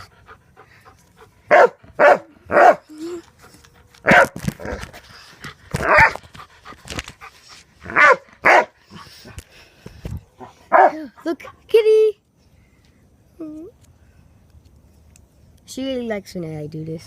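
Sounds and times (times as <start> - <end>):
dog barking: 1.5 - 2.8, 4.1 - 4.4, 5.8 - 6.2, 7.9 - 8.8, 10.7 - 11.0.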